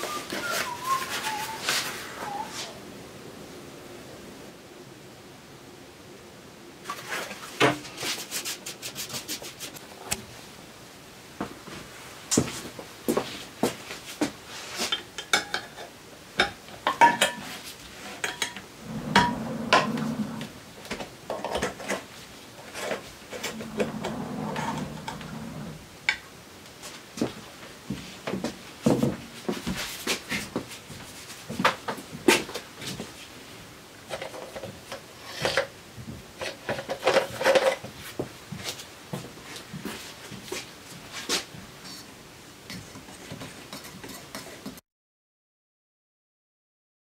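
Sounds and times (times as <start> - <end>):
low rubbing or scraping: 0.0 - 2.8, 18.7 - 21.0, 22.7 - 26.2.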